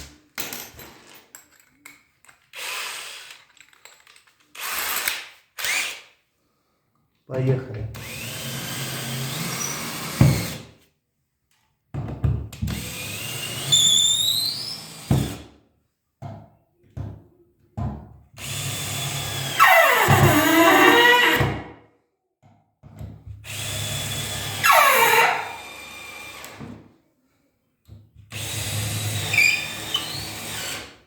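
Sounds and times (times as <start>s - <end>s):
power drill driving screws: 2.5s - 3.4s, 4.6s - 6.1s, 8.0s - 10.6s, 12.7s - 15.4s, 18.4s - 21.6s, 23.4s - 26.6s, 28.3s - 31.0s.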